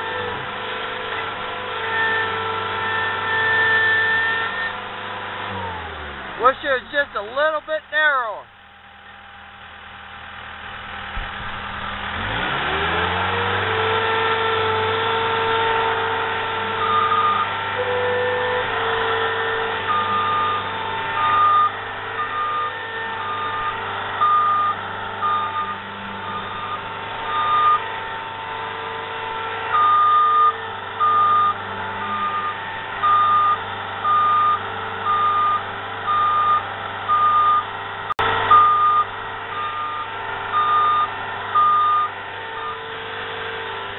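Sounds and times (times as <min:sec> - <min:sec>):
diesel engine running: 0:00.0 - 0:43.9
reverse alarm beeping: 0:16.8 - 0:18.7, 0:19.9 - 0:27.9, 0:29.8 - 0:37.7, 0:38.5 - 0:42.8.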